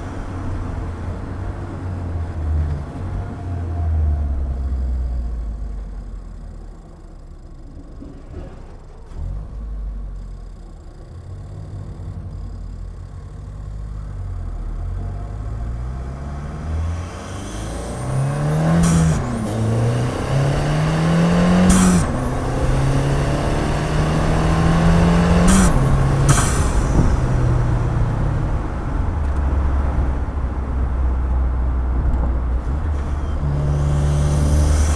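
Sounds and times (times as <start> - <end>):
car engine accelerating: 8.0 - 34.9
turbo whoosh: 16.9 - 29.1.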